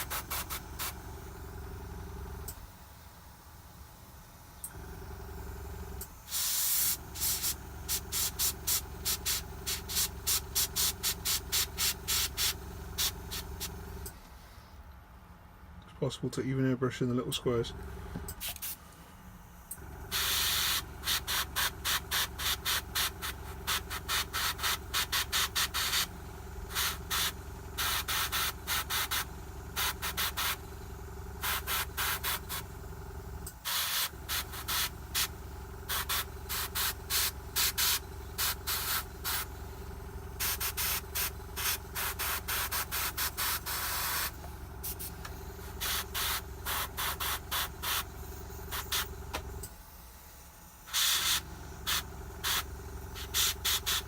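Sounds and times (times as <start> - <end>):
airbrush spraying hiss: 0.0 - 1.0, 6.3 - 13.7, 20.1 - 26.1, 26.7 - 30.6, 31.4 - 32.6, 33.7 - 35.3, 35.9 - 39.5, 40.4 - 49.1, 50.8 - 54.0
air compressor hum: 0.0 - 54.0.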